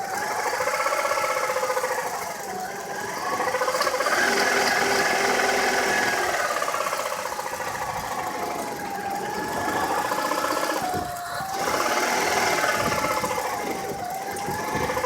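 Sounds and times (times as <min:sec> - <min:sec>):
engine idling rough: 0:00.0 - 0:15.0.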